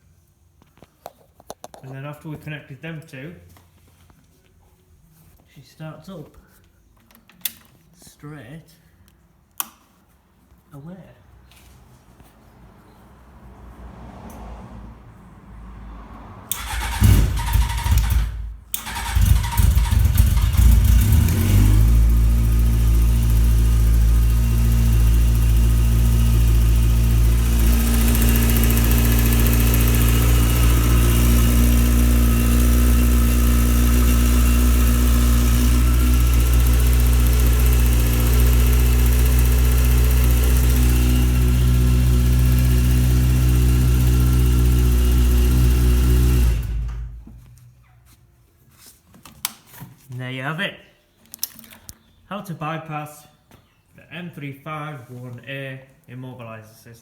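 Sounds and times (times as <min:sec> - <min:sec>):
motorcycle engine starting and idling: 0:16.4 - 0:47.7.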